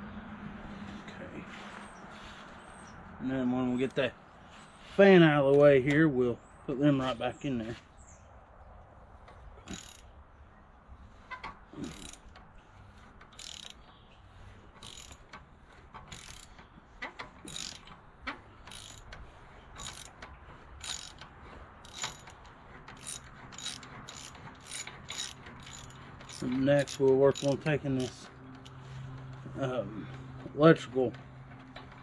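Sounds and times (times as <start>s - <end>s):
ratchet wrench clicking: 9.6s - 10.1s, 11.4s - 12.5s, 13.2s - 14.0s, 14.8s - 18.0s, 18.6s - 29.5s.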